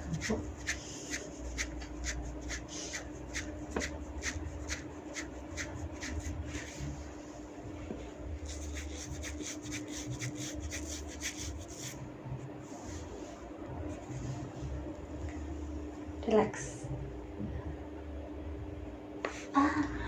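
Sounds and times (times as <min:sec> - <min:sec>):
hands rubbing through hair: 0:00.1 - 0:07.0, 0:08.4 - 0:12.0.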